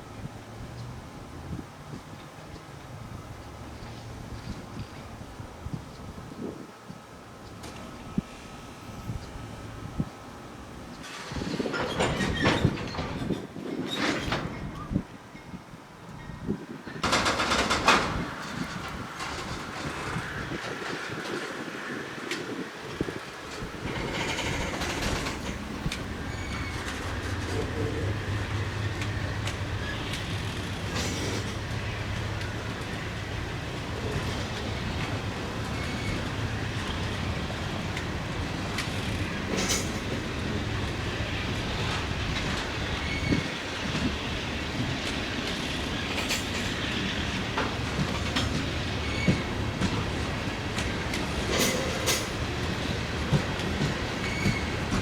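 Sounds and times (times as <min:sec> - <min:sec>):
diesel locomotive running: 0:00.0 - 0:55.0
rolling railcars rumbling: 0:00.0 - 0:55.0
wheels clacking over rail joints: 0:09.2 - 0:55.0
wheel squeals: 0:10.9 - 0:15.0, 0:23.0 - 0:32.9, 0:34.0 - 0:37.8, 0:38.5 - 0:50.2, 0:50.8 - 0:55.0.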